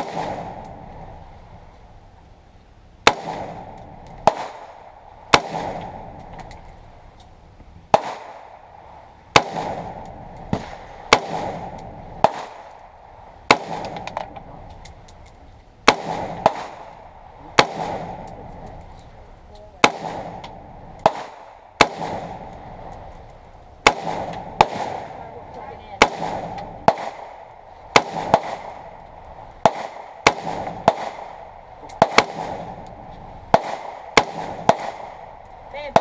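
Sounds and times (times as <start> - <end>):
rifle gunshots: 0.0 - 0.6, 3.0 - 6.2, 7.9 - 8.6, 9.3 - 12.8, 13.5 - 14.3, 15.8 - 18.6, 19.8 - 22.6, 23.8 - 25.2, 26.0 - 29.0, 29.6 - 32.8, 33.5 - 36.0.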